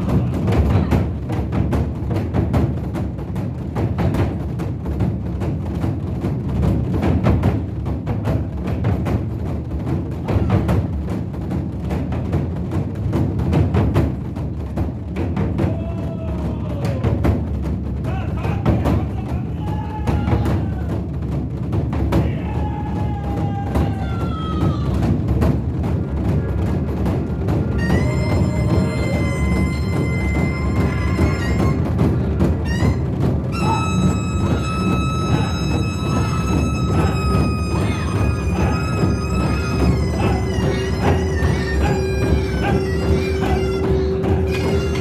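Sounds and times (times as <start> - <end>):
drums beaten in rapid rolling rhythm: 0.0 - 45.0
drawn-out sliding tones: 27.7 - 45.0.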